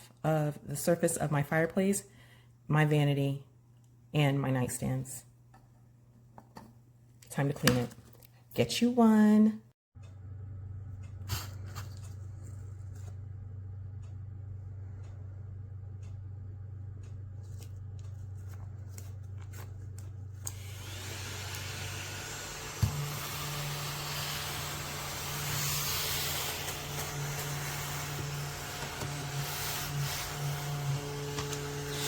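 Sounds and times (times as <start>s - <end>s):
vacuum cleaner motor hum: 20.5s - 32.0s.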